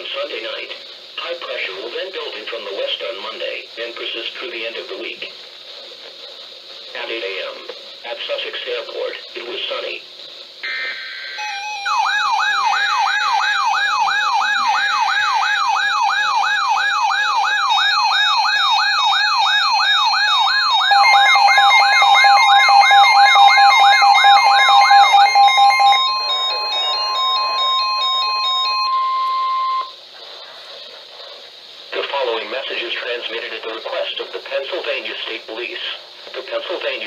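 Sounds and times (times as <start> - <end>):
electronic siren wailing: 10.6 - 30.0
steady warning tone: 10.6 - 30.0.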